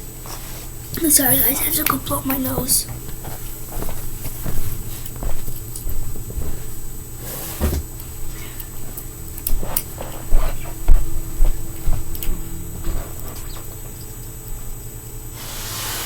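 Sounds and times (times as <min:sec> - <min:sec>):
short hiss: 0:15.4 - 0:16.0.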